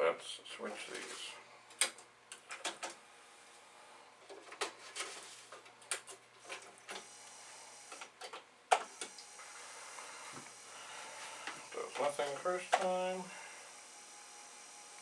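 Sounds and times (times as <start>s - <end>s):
floppy disk drive clicks and clacks: 1.7s - 3.0s, 7.8s - 9.5s, 11.4s - 13.2s.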